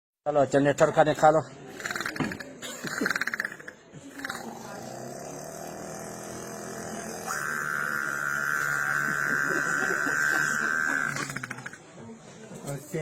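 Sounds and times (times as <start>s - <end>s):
man imitating generator with voice: 1.8s - 11.8s.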